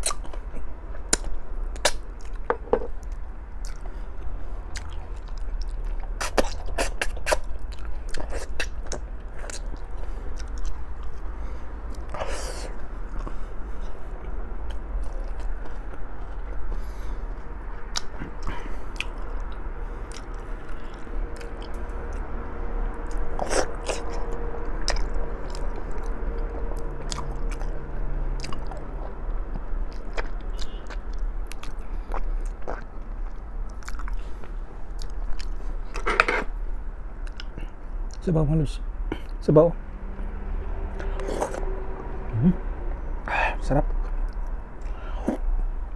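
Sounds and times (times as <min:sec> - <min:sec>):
close-up chewing and biting: 0:00.0 - 0:22.3, 0:23.0 - 0:27.8, 0:28.4 - 0:36.5, 0:41.0 - 0:41.7
steady low hum: 0:00.0 - 0:45.9.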